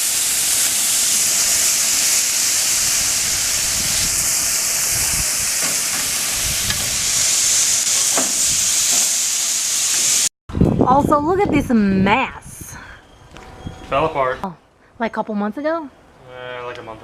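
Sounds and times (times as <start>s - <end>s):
meat sizzling on a grill: 0.0s - 10.3s.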